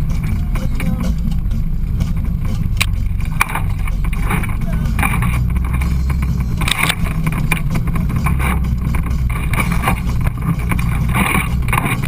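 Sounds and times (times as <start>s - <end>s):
knocks and rattles over rough ground: 0.0s - 12.0s
utv engine running: 0.0s - 12.0s.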